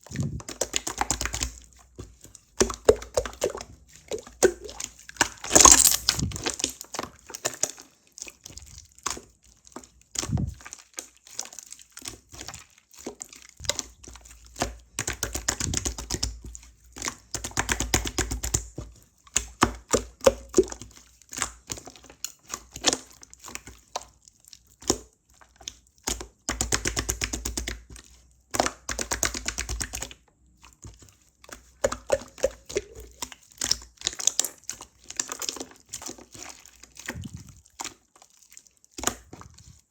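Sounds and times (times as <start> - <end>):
slime crackling and popping: 4.6 - 7.0.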